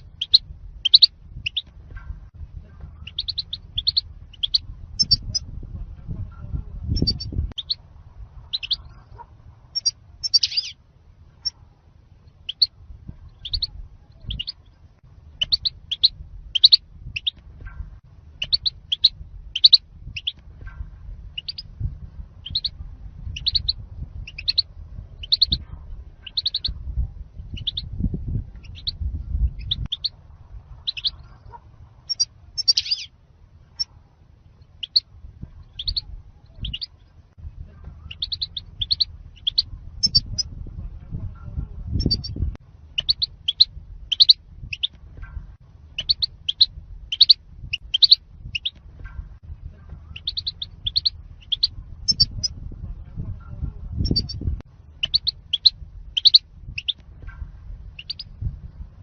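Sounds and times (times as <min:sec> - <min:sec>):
bird chirping high: 0:00.0 - 0:01.7, 0:03.0 - 0:05.4, 0:06.9 - 0:07.8, 0:08.4 - 0:09.0, 0:09.8 - 0:10.8, 0:12.3 - 0:14.8, 0:15.4 - 0:17.4, 0:18.4 - 0:20.4, 0:21.4 - 0:21.7, 0:22.4 - 0:25.6, 0:26.2 - 0:26.8, 0:27.5 - 0:28.0, 0:28.6 - 0:30.2, 0:30.8 - 0:33.1, 0:34.6 - 0:37.1, 0:38.0 - 0:40.5, 0:42.0 - 0:45.0, 0:45.9 - 0:49.2, 0:50.0 - 0:52.5, 0:54.0 - 0:57.4, 0:58.0 - 0:58.4
low rumble: 0:00.0 - 0:59.0.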